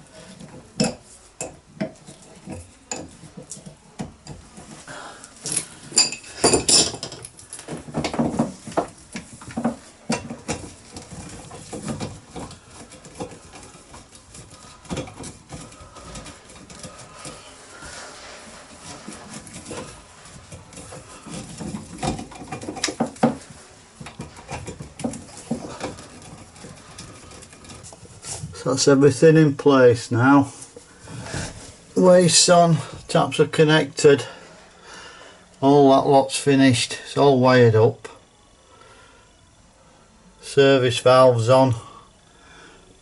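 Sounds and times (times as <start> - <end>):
plumbing parts clattering: 0.0 - 29.0.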